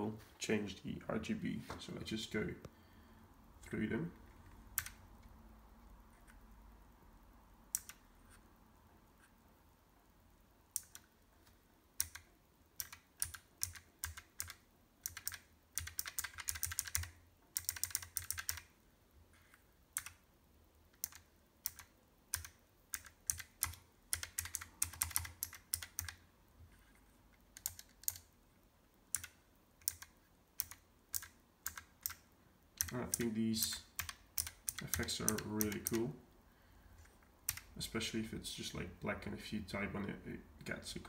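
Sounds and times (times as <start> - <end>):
mechanical keyboard key clicks: 12.0 - 18.7, 32.8 - 36.0
rapid typing: 12.0 - 18.7, 21.0 - 26.2, 27.6 - 28.3, 29.1 - 32.2, 32.8 - 36.0.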